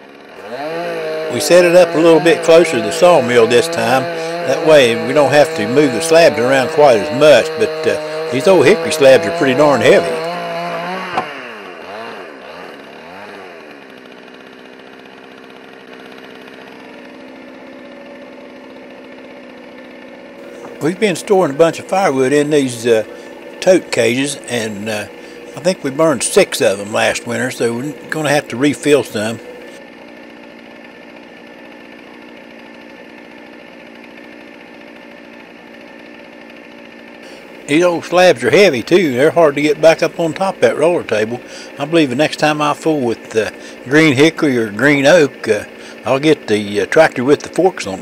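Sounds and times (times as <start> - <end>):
two-stroke chainsaw running: 0.0 - 48.0.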